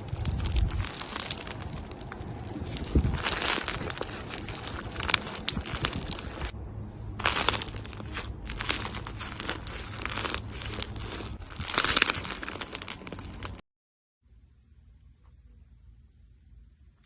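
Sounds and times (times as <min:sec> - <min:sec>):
crinkling crackling clicks: 0:00.0 - 0:06.5, 0:07.2 - 0:13.6.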